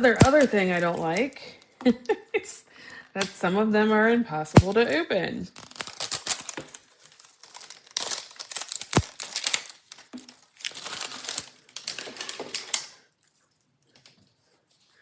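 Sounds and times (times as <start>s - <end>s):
plastic packaging crinkling: 5.6s - 12.9s.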